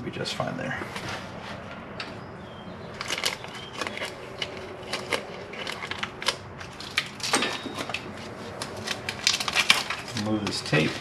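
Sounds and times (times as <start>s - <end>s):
plastic wiring harness clicking: 3.0s - 11.0s.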